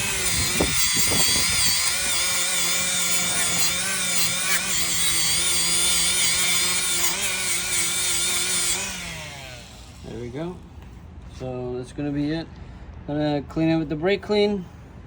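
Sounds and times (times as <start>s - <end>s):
power tool disc whining: 0.0s - 10.4s.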